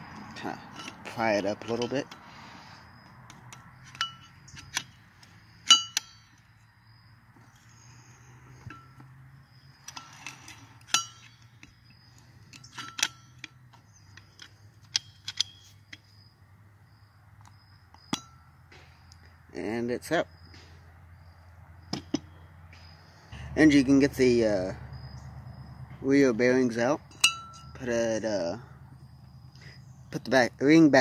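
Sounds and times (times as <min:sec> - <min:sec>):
screwdriver clinking on metal hub: 0:00.2 - 0:02.2, 0:03.4 - 0:05.0, 0:05.6 - 0:06.5, 0:09.8 - 0:16.1, 0:18.0 - 0:18.5, 0:27.0 - 0:27.9.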